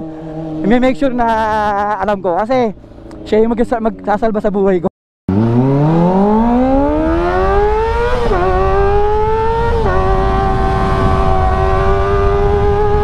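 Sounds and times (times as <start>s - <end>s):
low rushing wind noise: 0.0s - 4.7s, 5.3s - 13.0s
motorcycle engine revving hard: 5.3s - 13.0s.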